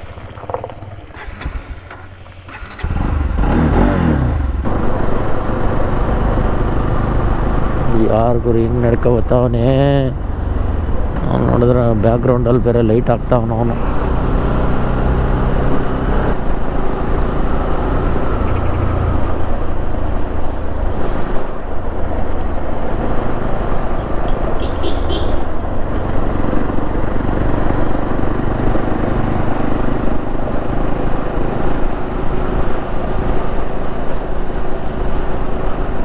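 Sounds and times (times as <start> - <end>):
motorcycle engine rumble: 0.0 - 36.0
high-pitched chirps: 18.2 - 19.2.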